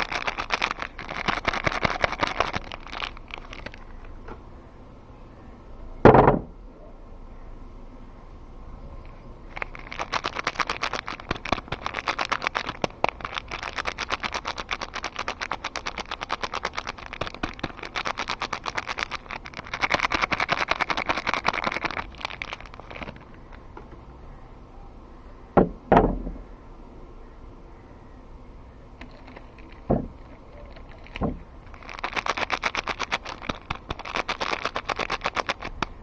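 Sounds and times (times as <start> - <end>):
wrapper crinkling and rustling: 0.0 - 4.1, 9.1 - 23.7, 29.0 - 36.0
knocks: 6.0 - 6.5.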